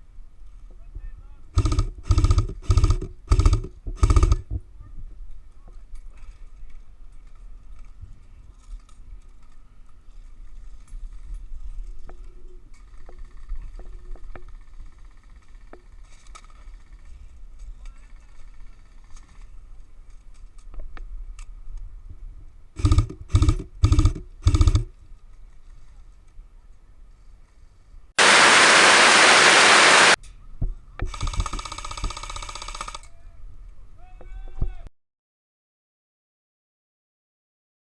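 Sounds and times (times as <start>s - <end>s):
rustle: 28.2s - 30.2s.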